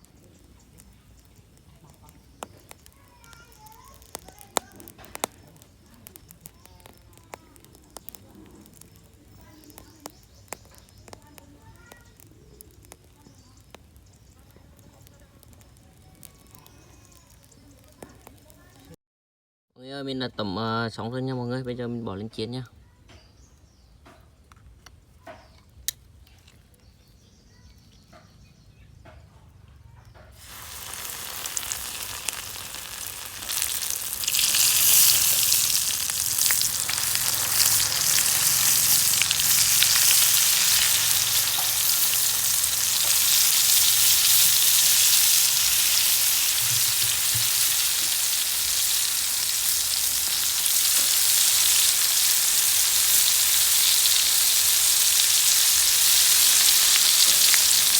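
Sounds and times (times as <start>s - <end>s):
faint clicks: 0.0s - 18.5s
food sizzling in hot oil: 0.0s - 19.0s, 30.4s - 57.9s.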